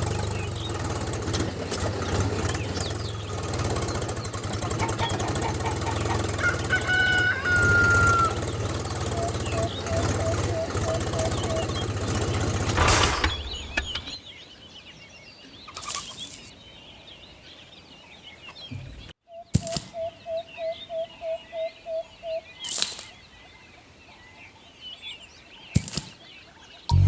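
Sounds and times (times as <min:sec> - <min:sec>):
small birds chirping: 0:00.0 - 0:27.0
brief bursts of noise: 0:12.7 - 0:14.2.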